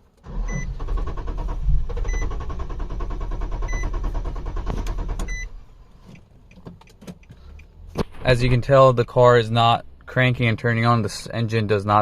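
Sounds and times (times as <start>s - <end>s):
engine cranking without starting: 0.2s - 7.7s.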